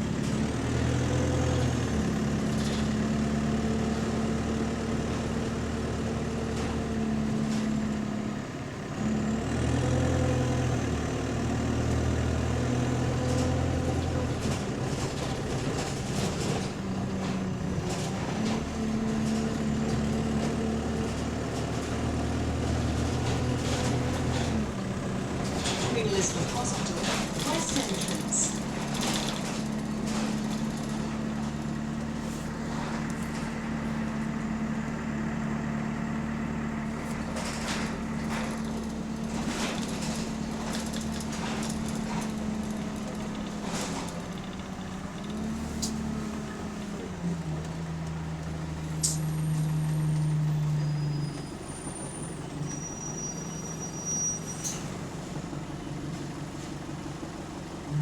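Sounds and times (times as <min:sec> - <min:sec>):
bus engine droning: 0:00.0 - 0:58.0
thin high whistle: 0:50.8 - 0:54.8.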